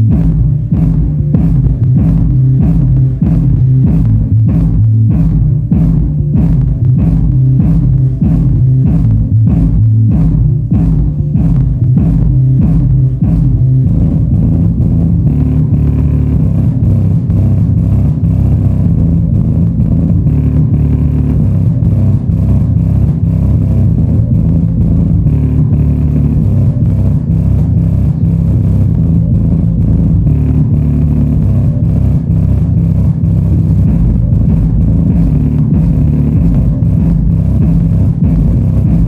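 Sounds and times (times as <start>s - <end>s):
bass-heavy song through subwoofers: 0.0s - 39.0s.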